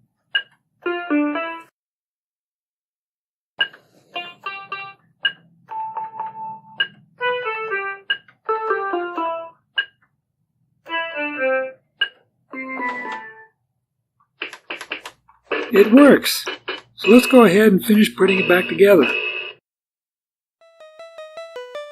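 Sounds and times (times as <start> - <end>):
toy keyboard electronic notes: 16.5 - 19.1, 20.6 - 21.9.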